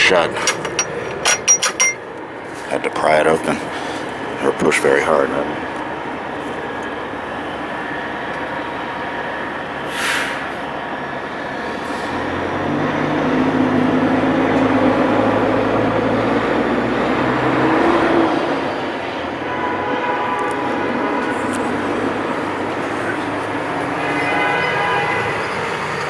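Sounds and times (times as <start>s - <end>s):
heavy vehicle engine rumbling: 0.0s - 19.6s, 20.3s - 26.0s
city street traffic: 0.0s - 26.0s
short hiss: 9.9s - 10.4s.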